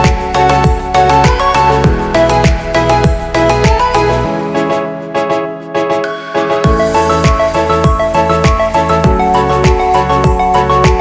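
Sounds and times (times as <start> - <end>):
deep kick drum: 0.0 - 4.0, 6.7 - 11.0
electronic music with keyboard chords: 0.0 - 11.0.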